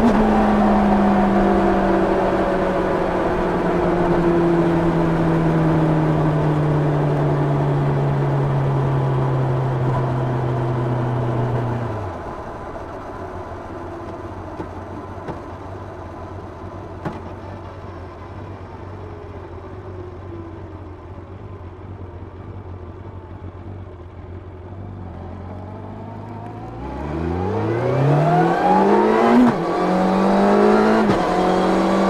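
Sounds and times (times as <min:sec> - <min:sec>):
motorcycle engine: 0:00.0 - 0:32.0.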